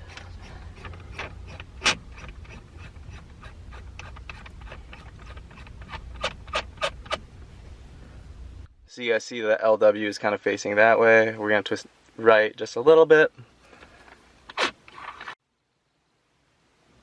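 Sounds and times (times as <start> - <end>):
shift knob clicking and rubbing: 0.0 - 7.2
steady low hum: 0.0 - 9.0.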